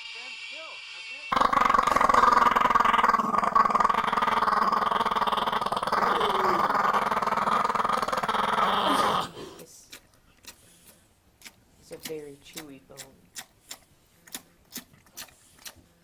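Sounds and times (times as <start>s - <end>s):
dog growling: 1.3s - 9.6s.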